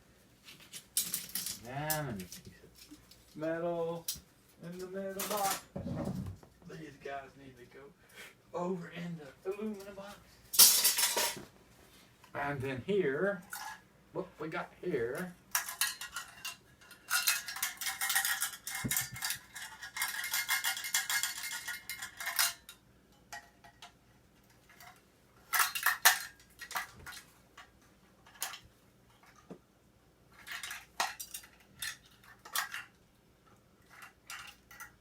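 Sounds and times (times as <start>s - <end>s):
scrap metal parts clattering: 0.7s - 3.3s, 4.8s - 6.3s, 10.5s - 11.4s, 13.5s - 13.8s, 15.5s - 23.8s, 24.6s - 27.3s, 30.3s - 33.0s, 33.8s - 35.0s.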